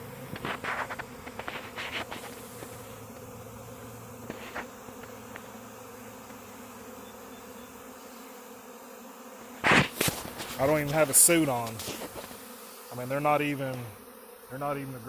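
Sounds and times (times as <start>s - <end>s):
bee swarm droning: 0.0s - 15.0s
loud bee buzzes: 0.0s - 15.0s.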